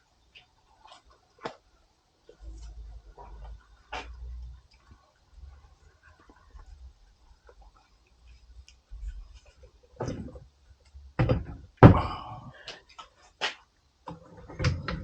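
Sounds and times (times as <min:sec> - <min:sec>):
tools knocking and clunking: 0:11.2 - 0:12.0.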